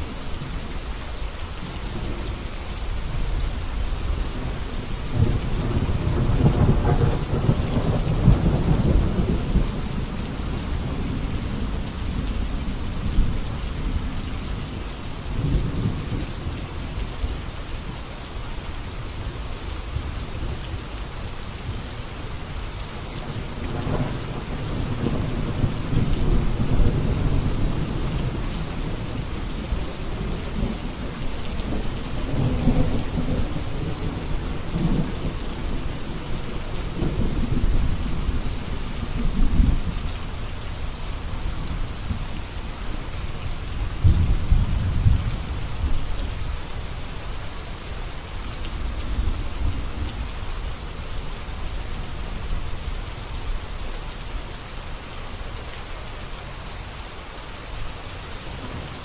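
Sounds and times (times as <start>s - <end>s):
steady rain: 0.0s - 59.0s
rolling thunder: 4.4s - 13.5s, 23.6s - 40.1s, 43.7s - 46.4s.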